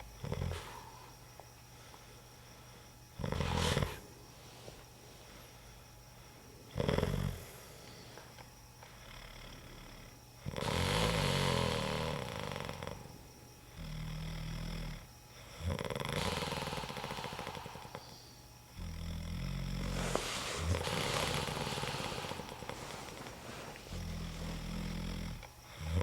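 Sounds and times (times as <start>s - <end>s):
man snoring: 0.0s - 1.1s, 3.2s - 4.1s, 6.7s - 7.6s, 9.0s - 26.0s.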